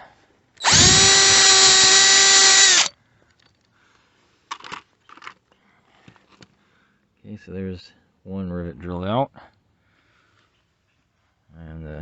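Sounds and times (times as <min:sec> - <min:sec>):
power drill drilling metal: 0:00.6 - 0:02.9.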